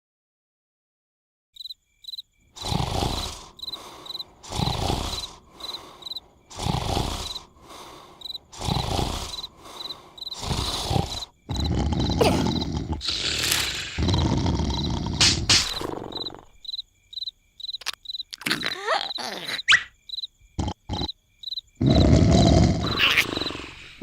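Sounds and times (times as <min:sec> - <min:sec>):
crickets chirping: 0:01.6 - 0:24.0
cartoon character snoring: 0:02.6 - 0:16.6, 0:20.6 - 0:21.1, 0:21.8 - 0:24.0.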